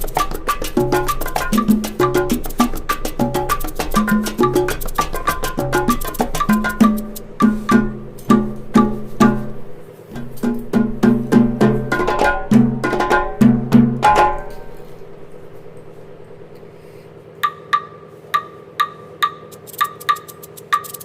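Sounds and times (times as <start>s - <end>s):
wood block ticks: 17.4s - 21.0s.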